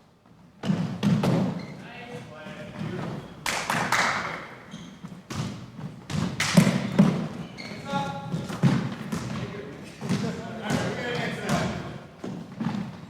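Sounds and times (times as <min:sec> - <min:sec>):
basketball bouncing on hard floor: 0:05.0 - 0:07.3, 0:08.3 - 0:10.9.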